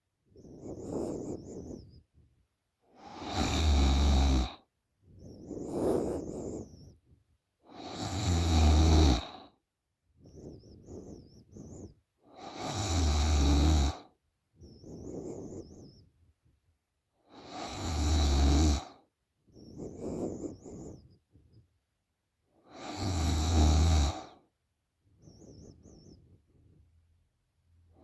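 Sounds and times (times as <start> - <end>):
soft breathing: 0.0 - 9.6, 10.2 - 16.1, 17.2 - 21.7, 22.6 - 27.0
girl snoring: 3.0 - 4.6, 7.7 - 9.5, 12.4 - 14.0, 17.4 - 19.0, 22.7 - 24.4.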